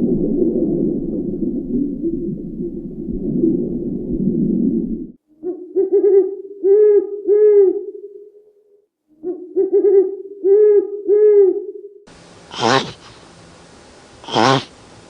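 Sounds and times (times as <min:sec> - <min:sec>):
pigeon cooing: 0:05.4 - 0:08.3, 0:09.1 - 0:13.2, 0:14.2 - 0:14.7.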